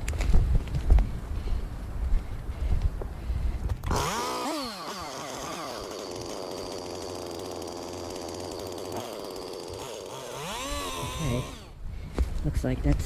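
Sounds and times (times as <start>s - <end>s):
chainsaw revving and cutting: 3.8s - 11.8s.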